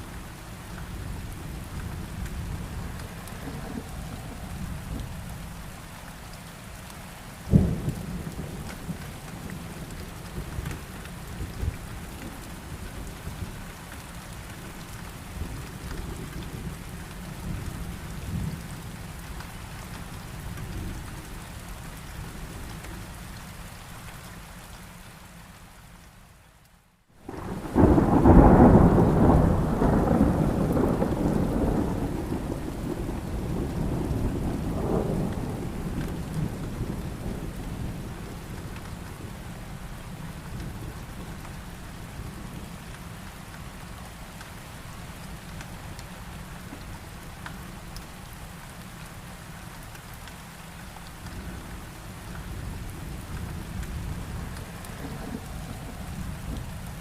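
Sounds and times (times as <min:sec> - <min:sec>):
heavy rain: 0:00.0 - 0:57.0
loud thunderclap: 0:27.3 - 0:37.5
rolling thunder: 0:27.3 - 0:39.4, 0:52.5 - 0:57.0.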